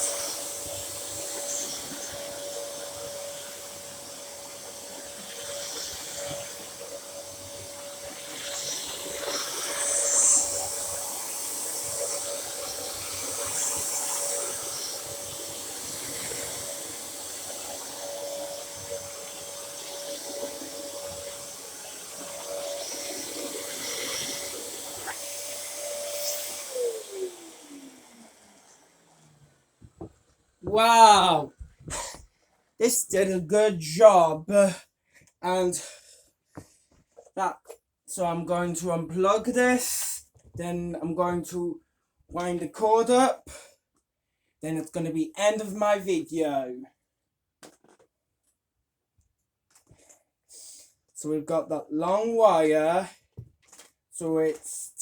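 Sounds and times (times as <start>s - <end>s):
vacuum motor winding down: 0.0s - 29.8s
vacuum cleaner running: 0.0s - 32.2s.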